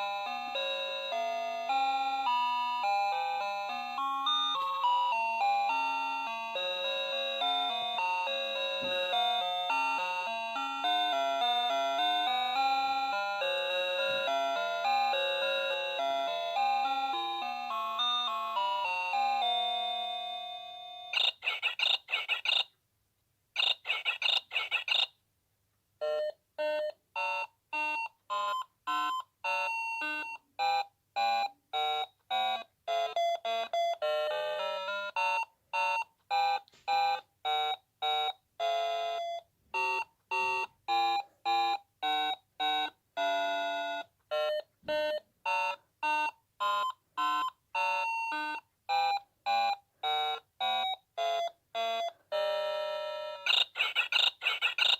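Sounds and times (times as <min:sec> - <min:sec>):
alarm clock beeping melody: 0:00.0 - 0:22.6, 0:26.0 - 0:54.9
rapid warbling beeps: 0:53.5 - 0:54.9.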